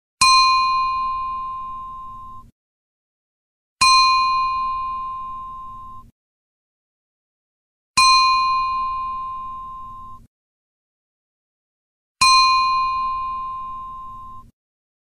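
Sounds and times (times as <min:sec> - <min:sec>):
glass ringing ping: 0:00.2 - 0:02.4, 0:03.8 - 0:06.0, 0:08.0 - 0:10.2, 0:12.2 - 0:14.5.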